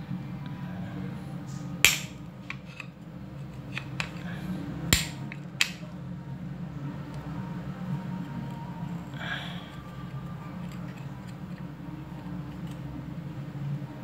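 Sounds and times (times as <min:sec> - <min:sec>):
steady low hum: 0:00.0 - 0:14.0
sharp clicks of metal parts: 0:04.9 - 0:05.8.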